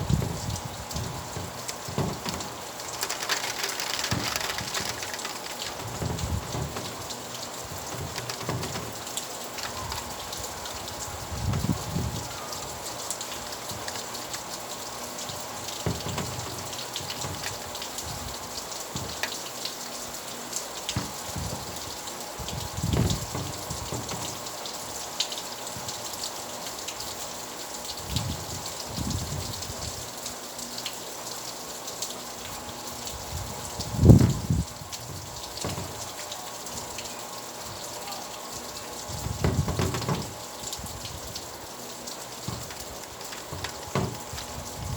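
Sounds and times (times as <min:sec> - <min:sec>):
raindrops ticking: 0:00.0 - 0:44.9
steady rainfall: 0:00.0 - 0:44.9.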